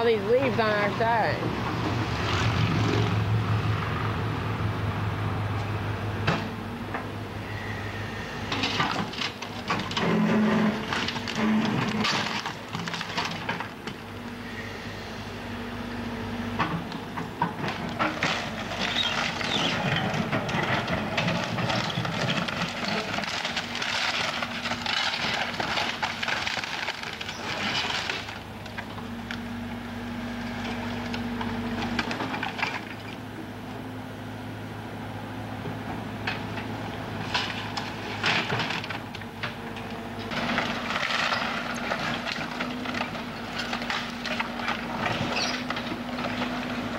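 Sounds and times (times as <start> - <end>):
engine running steadily: 0.0 - 46.9
timber cracking and splintering: 21.2 - 28.4.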